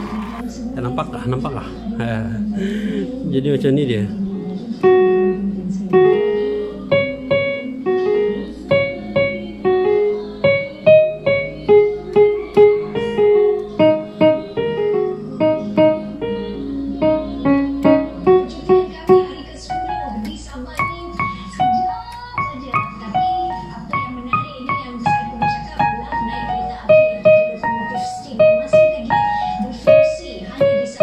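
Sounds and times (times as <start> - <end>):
electronic keyboard piano melody: 4.5 - 31.0.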